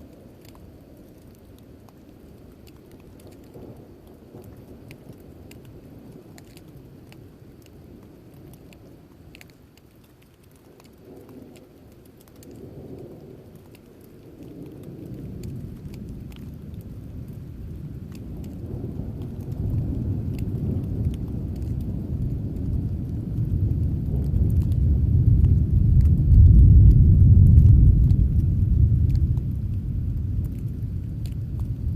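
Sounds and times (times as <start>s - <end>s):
rain falling: 0.0s - 31.9s
thunder rumble: 11.0s - 31.9s.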